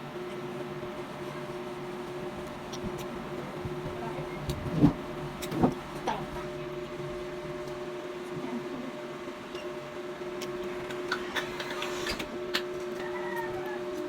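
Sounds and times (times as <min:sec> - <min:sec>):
steady mechanical hum: 0:00.0 - 0:14.0.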